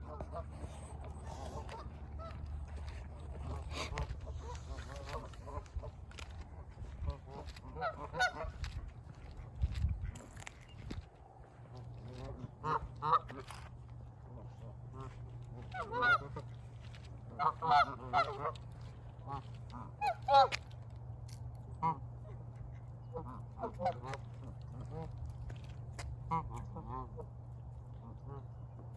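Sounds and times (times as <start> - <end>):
geese honking: 0.0 - 8.7, 14.4 - 16.5, 17.3 - 20.6, 23.0 - 25.1, 26.2 - 27.3
low rumble: 0.0 - 28.9.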